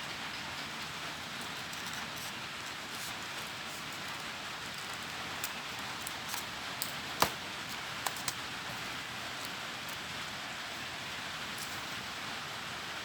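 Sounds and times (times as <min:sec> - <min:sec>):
steady hiss: 0:00.0 - 0:13.0
paper being creased: 0:01.4 - 0:09.6.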